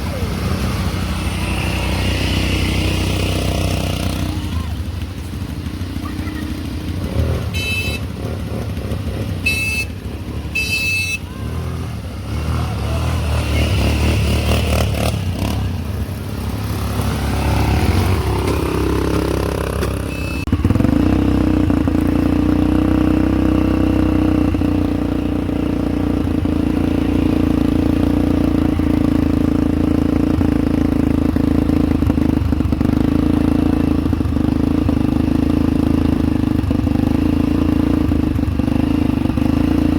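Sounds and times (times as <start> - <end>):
atv engines running: 0.0 - 39.9
short horn beeps: 7.5 - 8.1, 9.4 - 11.4, 19.9 - 20.6.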